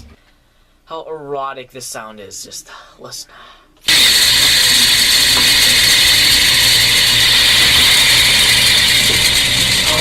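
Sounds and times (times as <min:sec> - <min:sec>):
fidget spinner whirring: 0:03.9 - 0:10.0.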